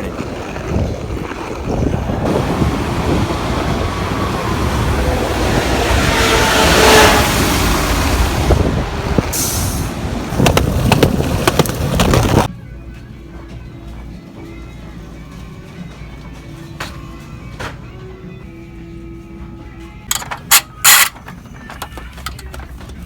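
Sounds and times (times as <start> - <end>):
vehicle passing: 0.9 - 12.5.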